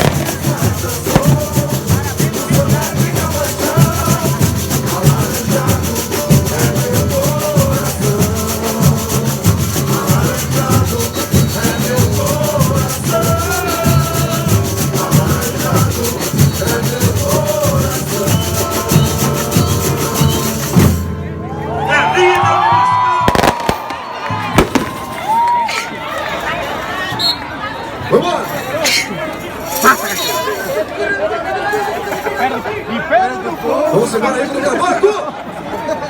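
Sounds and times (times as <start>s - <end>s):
deep bass drums beating: 0.0s - 10.8s
snare drums and shakers: 0.0s - 21.0s, 23.2s - 26.0s.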